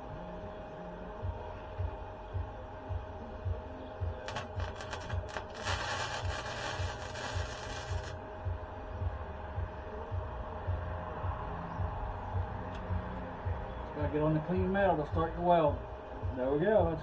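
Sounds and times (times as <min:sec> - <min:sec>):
steady low hum: 0:00.0 - 0:17.0
electric arc welding: 0:04.2 - 0:08.2.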